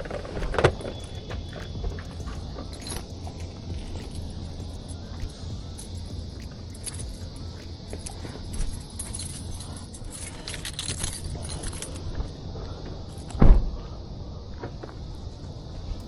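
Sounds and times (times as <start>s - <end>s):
metallic jingling and clicking: 0.0s - 12.3s
steady low rumble: 0.0s - 16.0s
heavy thump: 13.4s - 13.8s.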